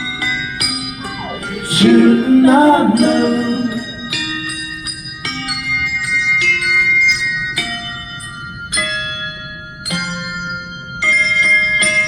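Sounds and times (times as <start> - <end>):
handbells ringing chords: 0.0 - 12.0.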